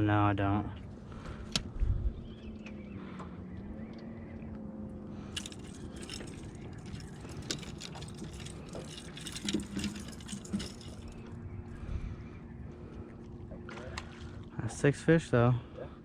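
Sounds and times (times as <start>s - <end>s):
steady low hum: 0.0s - 16.0s
metallic rattles: 5.3s - 11.4s.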